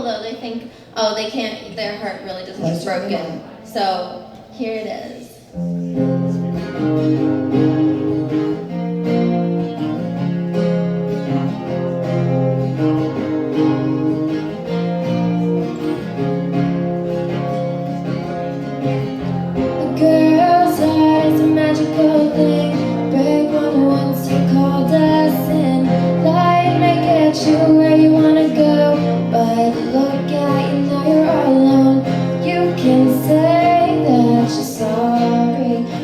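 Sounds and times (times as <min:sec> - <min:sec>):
acoustic guitar playing: 0:01.1 - 0:36.0
girl singing: 0:19.6 - 0:36.0.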